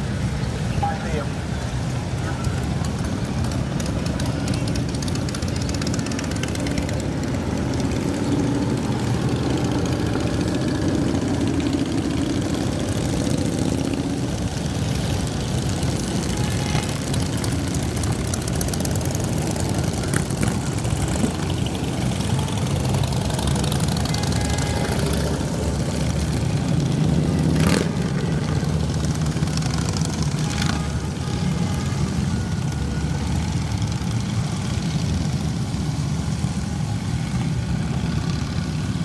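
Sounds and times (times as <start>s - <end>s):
motorcycle engines rumbling: 0.0s - 39.0s.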